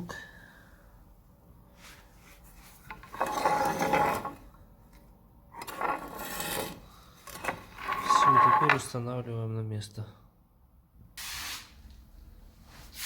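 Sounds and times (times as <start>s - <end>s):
rasping scrapes: 2.6s - 4.4s, 5.6s - 8.9s.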